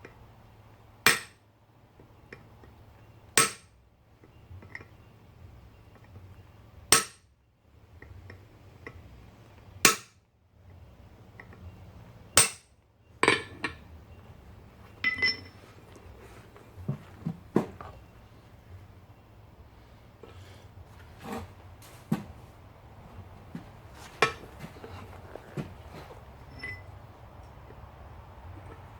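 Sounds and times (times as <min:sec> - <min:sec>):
hammer striking metal on anvil: 0:01.1 - 0:01.4, 0:03.4 - 0:03.7, 0:06.9 - 0:07.2, 0:09.9 - 0:10.1, 0:12.4 - 0:13.8.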